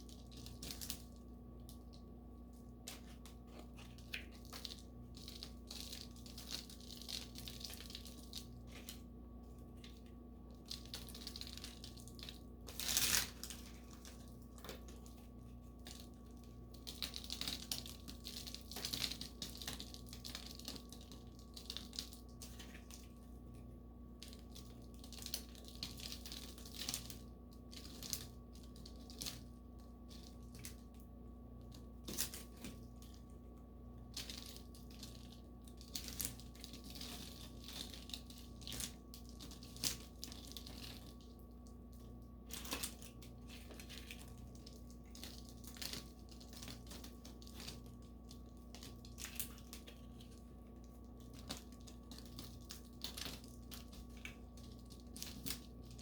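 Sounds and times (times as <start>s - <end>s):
faint steady hum: 0.0s - 56.0s
plaster tiles crunching: 2.8s - 23.3s.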